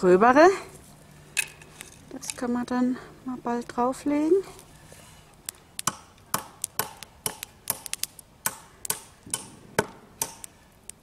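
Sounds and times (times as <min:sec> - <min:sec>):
hatchet chopping firewood: 0:05.5 - 0:10.6.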